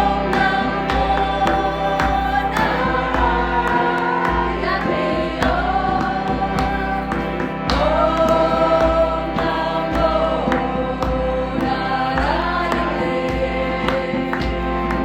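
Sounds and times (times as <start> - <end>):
choir singing long held notes: 0.0 - 15.0
sustained accompaniment with light beat: 0.0 - 15.0.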